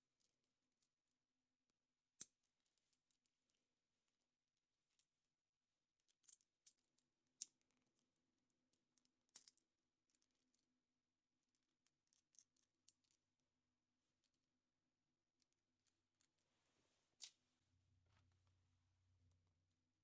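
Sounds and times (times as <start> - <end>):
small objects clicking and crinkling: 6.0 - 8.0, 8.7 - 10.7, 11.4 - 13.2.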